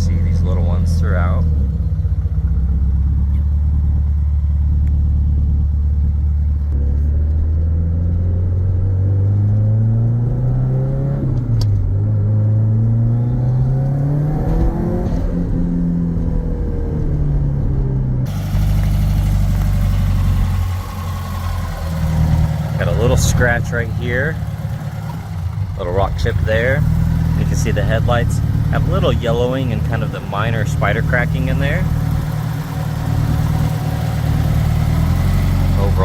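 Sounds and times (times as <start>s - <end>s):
car engine revving: 18.3s - 36.0s.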